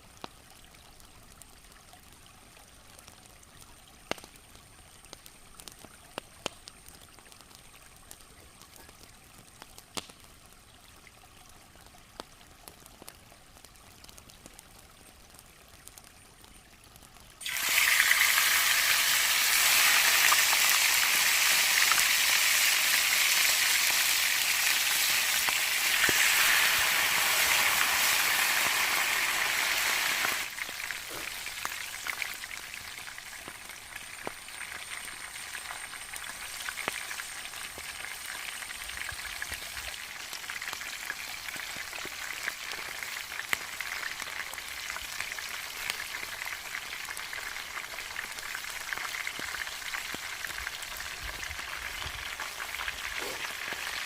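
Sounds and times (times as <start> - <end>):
chicken sizzling in hot oil: 17.4 - 54.0
oil popping: 23.6 - 32.4.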